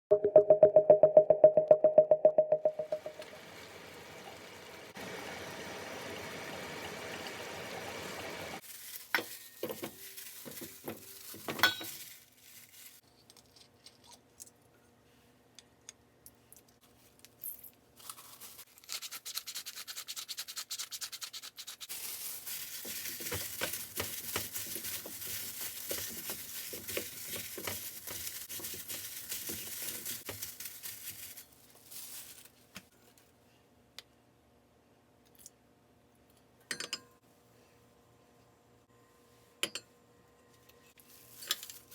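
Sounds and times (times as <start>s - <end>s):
scraping and stirring: 21.8s - 31.2s.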